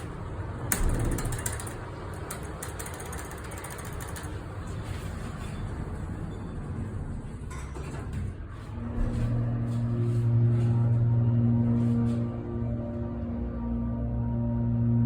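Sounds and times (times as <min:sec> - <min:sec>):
low mechanical hum: 0:00.0 - 0:15.0
elevator mechanism clunk: 0:00.6 - 0:04.6.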